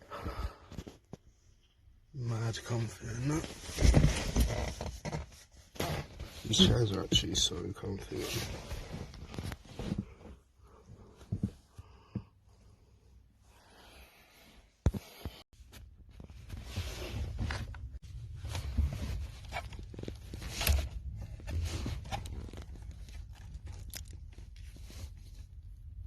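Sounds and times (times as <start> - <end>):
handling rustling and knocking: 15.6 - 26.0.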